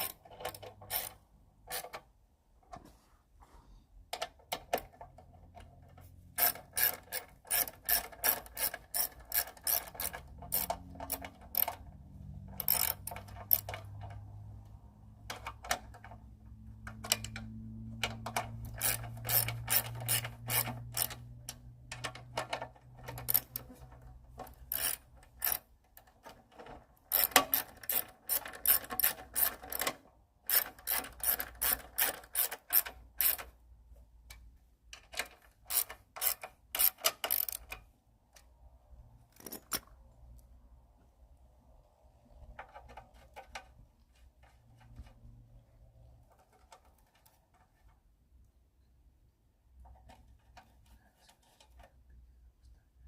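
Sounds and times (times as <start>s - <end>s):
ratchet clicking: 0.0s - 2.0s, 6.4s - 11.8s, 12.5s - 14.2s, 18.4s - 21.2s, 23.0s - 23.8s, 24.5s - 25.7s, 27.1s - 33.5s, 35.7s - 37.8s.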